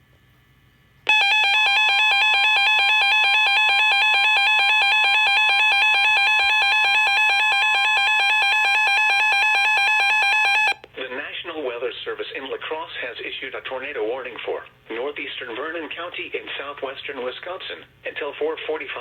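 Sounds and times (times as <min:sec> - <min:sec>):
warbling electronic alert tone: 0:01.1 - 0:10.8.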